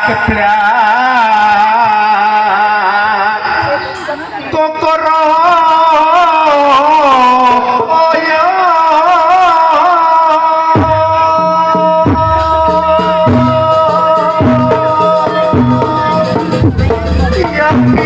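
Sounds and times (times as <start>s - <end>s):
drums: 0.0s - 18.0s
high nasal melody: 10.8s - 18.0s.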